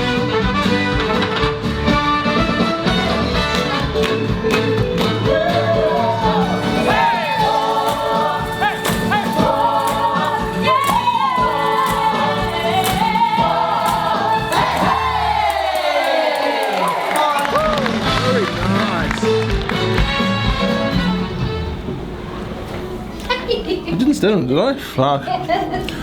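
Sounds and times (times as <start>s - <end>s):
song with singing voices: 4.3s - 18.2s.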